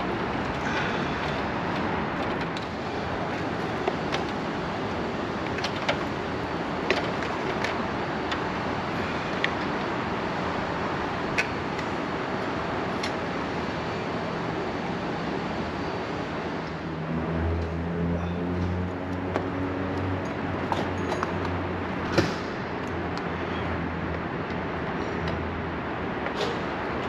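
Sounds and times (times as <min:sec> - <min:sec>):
distant street traffic: 0:00.0 - 0:27.0
tools and bike parts clinking: 0:20.2 - 0:21.6.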